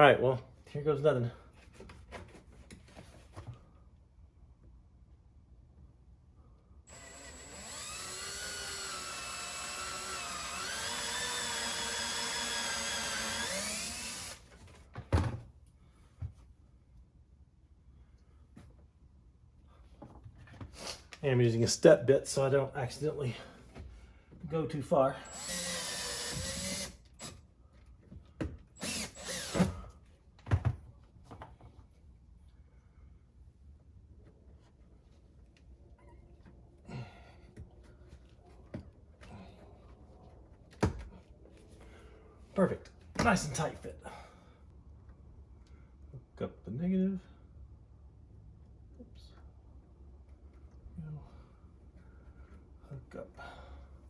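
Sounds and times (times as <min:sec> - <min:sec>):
power drill whining: 0:06.9 - 0:14.5, 0:25.2 - 0:27.4, 0:28.8 - 0:29.9.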